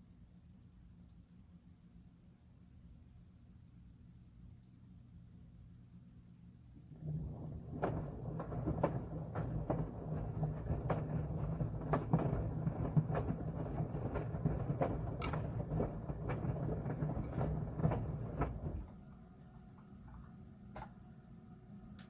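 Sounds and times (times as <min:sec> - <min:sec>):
washing machine motor hum: 0:06.8 - 0:20.2.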